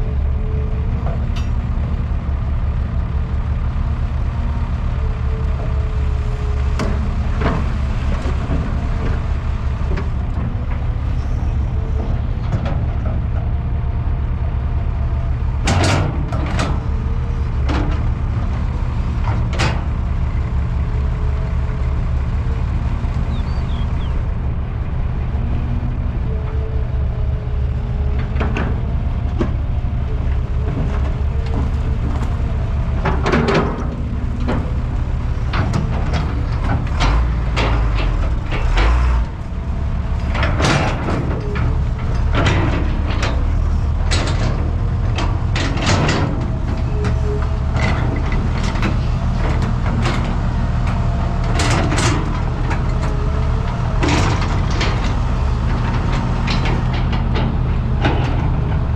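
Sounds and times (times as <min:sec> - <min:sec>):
excavator diesel engine running: 0:00.0 - 0:58.9
metallic clanks and knocks: 0:15.6 - 0:16.8, 0:54.0 - 0:58.9.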